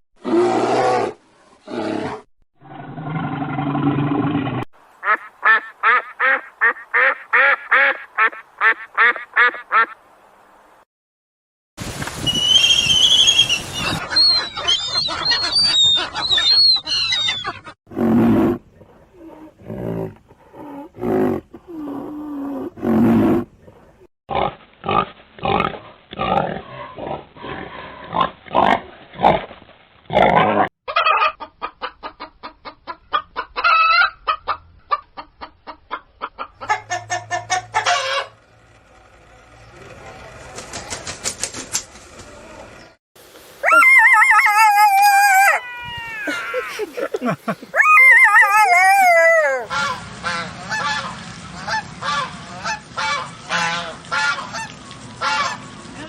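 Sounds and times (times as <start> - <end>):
high chirping calls: 12.3 - 17.6
fowl clucking: 30.9 - 38.4.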